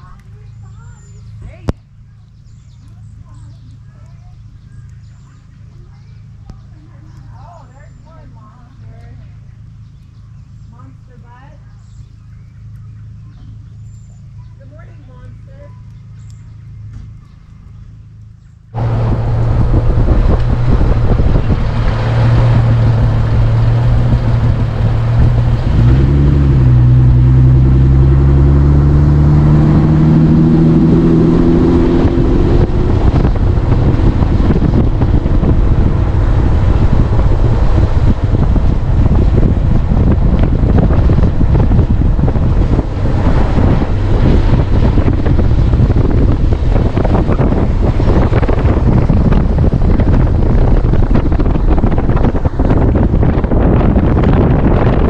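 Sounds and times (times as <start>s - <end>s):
vehicle engine humming: 0.0s - 55.0s
wind rush on microphone: 18.7s - 55.0s.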